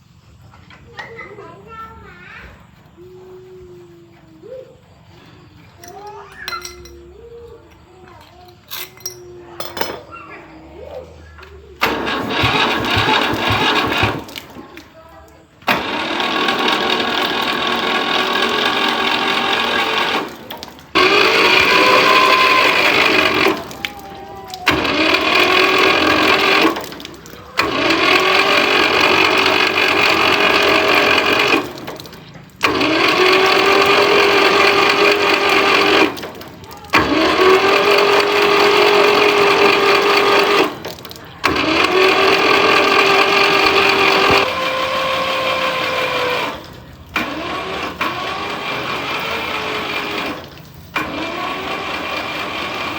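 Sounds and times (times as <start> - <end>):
small electric motor running in bursts: 11.9 - 14.4, 15.6 - 23.8, 24.7 - 27.0, 27.6 - 36.2, 41.4 - 50.4.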